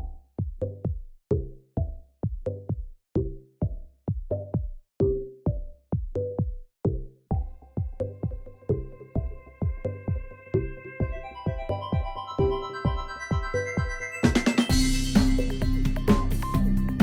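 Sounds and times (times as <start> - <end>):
drum machine beat: 0.0 - 17.0
electronic music: 7.0 - 17.0.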